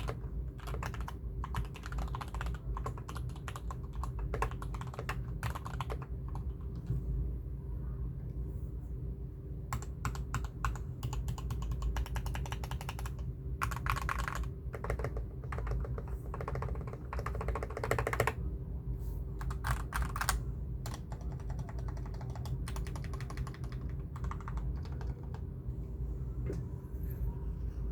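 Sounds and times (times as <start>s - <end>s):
mechanical keyboard typing: 0.0s - 6.9s, 9.7s - 18.4s, 19.4s - 25.4s.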